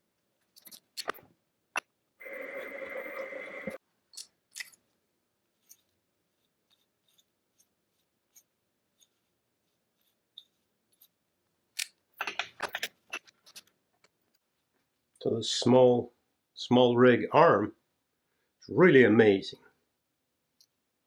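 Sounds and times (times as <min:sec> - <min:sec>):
clicks of small parts handled: 0:00.4 - 0:01.2, 0:04.1 - 0:05.0, 0:10.4 - 0:14.4.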